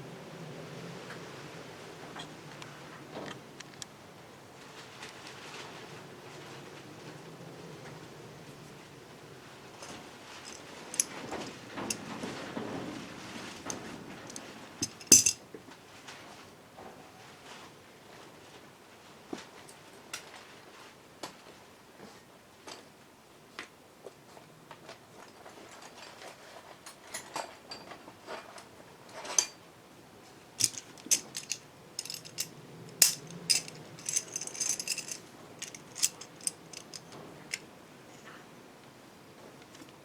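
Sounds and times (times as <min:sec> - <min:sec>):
metal tools clinking: 0:09.8 - 0:12.0, 0:13.7 - 0:15.4, 0:30.6 - 0:37.6
short rattle: 0:13.7 - 0:15.4, 0:30.6 - 0:37.6.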